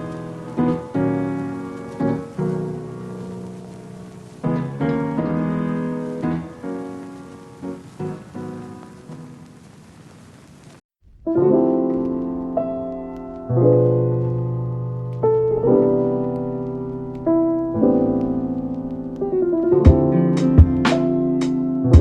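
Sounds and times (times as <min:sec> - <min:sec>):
piano chords: 0:00.0 - 0:09.6, 0:11.0 - 0:22.0.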